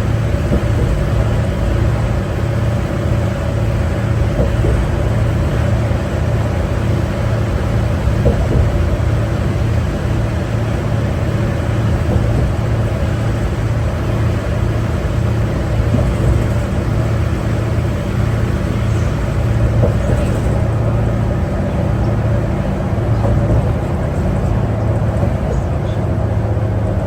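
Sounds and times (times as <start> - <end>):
bus diesel engine drone: 0.0 - 27.0
road noise: 0.0 - 27.0.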